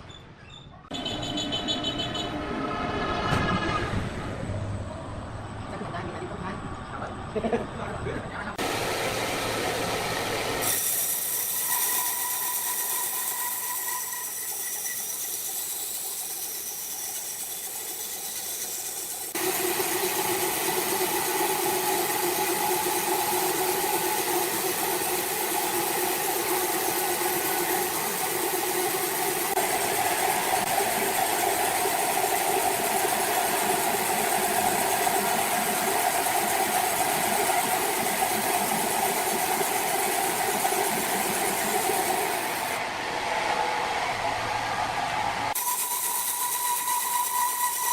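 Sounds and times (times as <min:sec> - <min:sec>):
engine running with rattle: 0:00.9 - 0:07.6.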